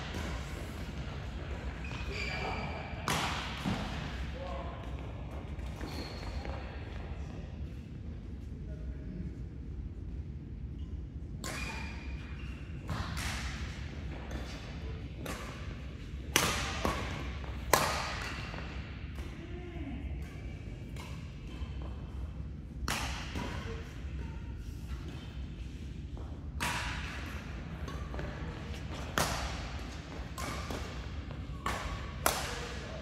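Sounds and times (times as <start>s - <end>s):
steady low hum: 0.0s - 33.0s
racket striking shuttlecock: 16.3s - 18.6s, 29.1s - 32.8s.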